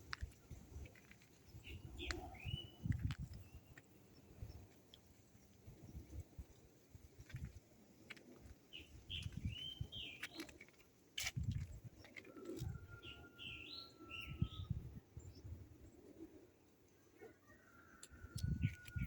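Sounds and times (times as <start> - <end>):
birds chirping: 0.0 - 6.2, 8.4 - 10.9, 11.6 - 16.4.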